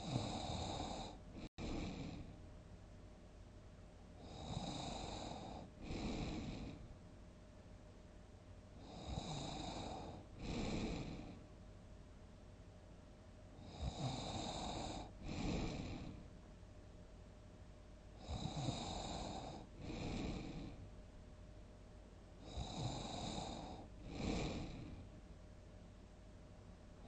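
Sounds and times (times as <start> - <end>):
person snoring: 0.0 - 2.3, 4.2 - 6.8, 8.8 - 11.4, 13.6 - 16.2, 18.2 - 20.8, 22.4 - 25.0.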